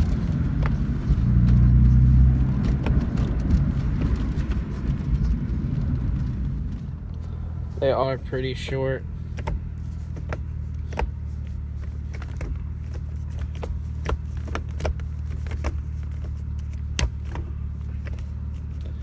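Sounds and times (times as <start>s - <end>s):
low hum: 0.0s - 13.6s
gear lever clicks and clunks: 11.8s - 19.0s.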